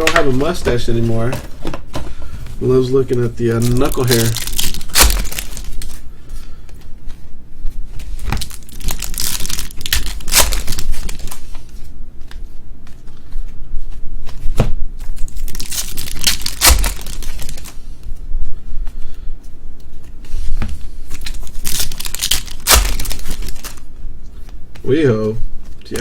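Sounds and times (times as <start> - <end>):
foil wrappers tearing and crinkling: 2.7 - 6.1, 8.1 - 11.7, 15.0 - 17.8, 21.1 - 23.9.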